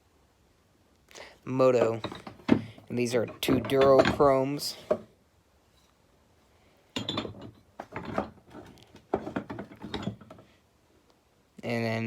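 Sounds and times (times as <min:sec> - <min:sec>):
metal hammers clinking: 0:01.7 - 0:05.0, 0:07.0 - 0:08.3.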